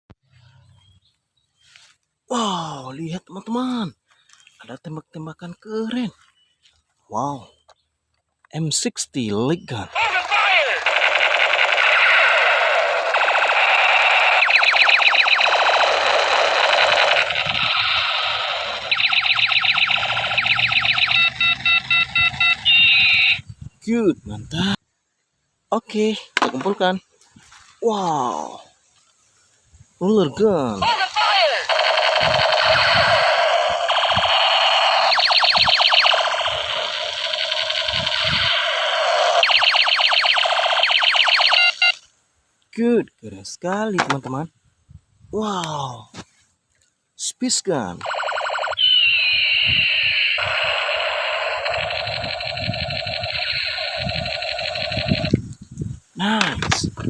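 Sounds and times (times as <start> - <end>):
toy gun pew zaps: 10.0 - 23.4, 30.8 - 42.0, 48.0 - 55.4
electronic beeps: 10.0 - 23.5, 30.8 - 42.0, 48.0 - 55.4.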